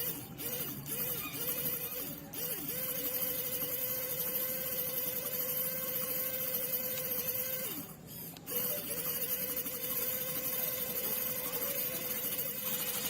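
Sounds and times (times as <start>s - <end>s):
small electric motor whirring: 0.0s - 13.0s.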